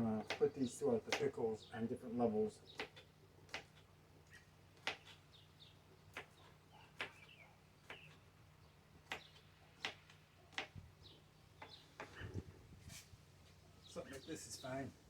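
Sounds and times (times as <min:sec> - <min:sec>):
faint bird chirps: 0:04.2 - 0:12.7.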